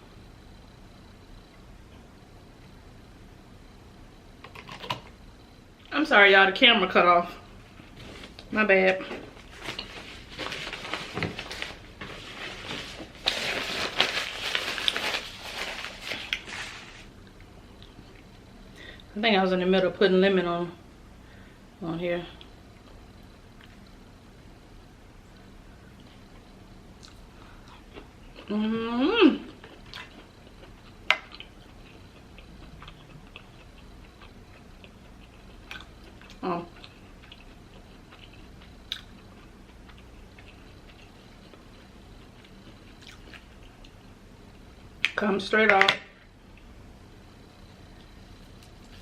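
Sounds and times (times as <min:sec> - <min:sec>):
food rustling and clicking: 0:07.9 - 0:18.2.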